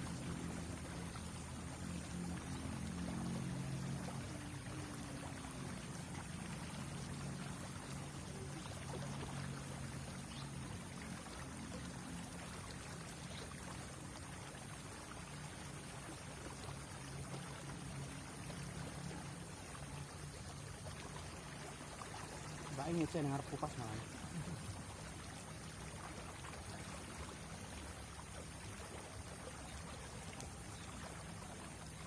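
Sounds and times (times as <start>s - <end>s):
low steady hum: 0.0s - 32.0s
river water running: 0.0s - 32.0s.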